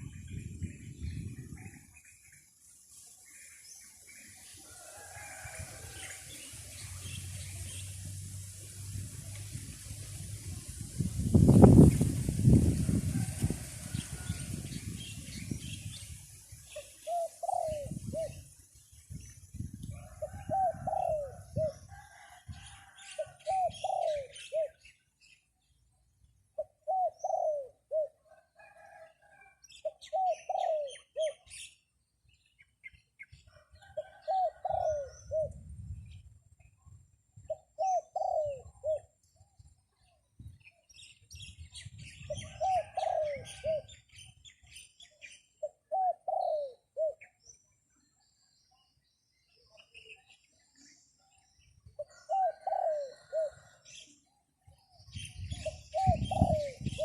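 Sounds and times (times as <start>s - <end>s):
wind rumble on microphone: 0.0s - 2.4s, 4.7s - 24.3s, 32.2s - 44.8s, 54.7s - 57.0s
dove cooing: 16.8s - 18.4s, 20.2s - 21.8s, 23.2s - 24.8s, 26.6s - 29.0s, 29.9s - 31.4s, 33.9s - 35.6s, 37.5s - 39.1s, 42.3s - 44.0s, 45.6s - 47.3s, 52.0s - 53.8s, 55.6s - 57.0s.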